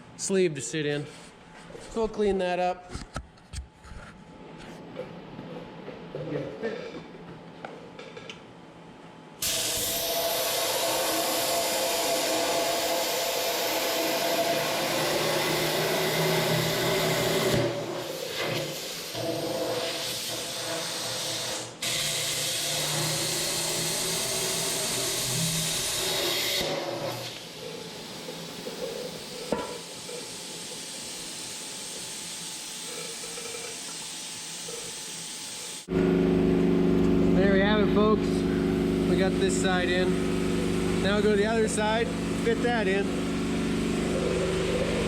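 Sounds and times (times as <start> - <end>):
cutting torch hissing: 9.4 - 35.9.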